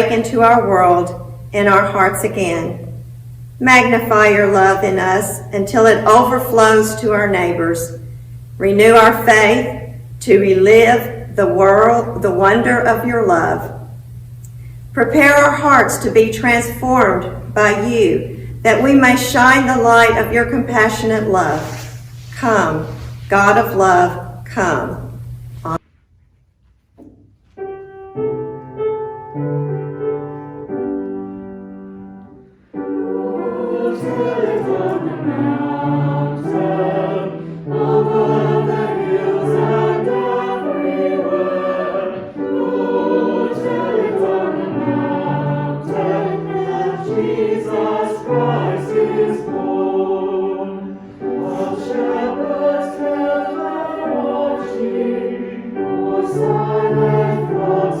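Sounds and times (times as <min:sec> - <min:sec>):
choir singing a hymn: 0:00.0 - 0:14.0, 0:15.1 - 0:25.8, 0:32.3 - 0:58.0
instrumental introduction: 0:00.0 - 0:26.0.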